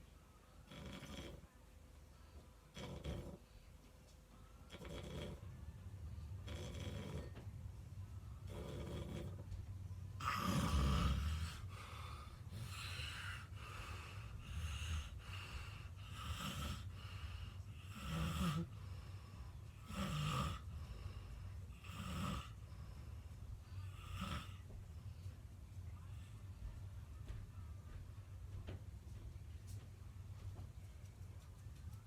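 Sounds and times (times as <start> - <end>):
faint breaths: 0.2 - 32.0
person snoring: 10.2 - 17.0, 17.8 - 18.8, 19.8 - 20.7, 21.7 - 22.6.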